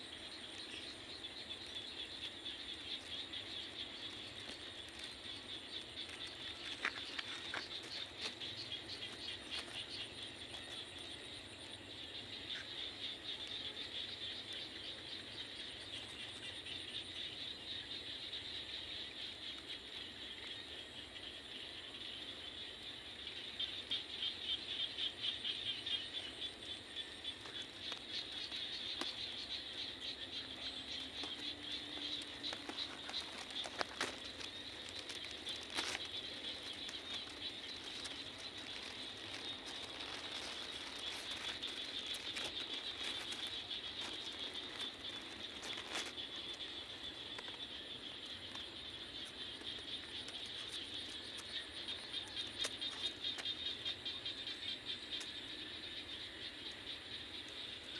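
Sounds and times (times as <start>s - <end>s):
crickets trilling: 0.0s - 57.9s.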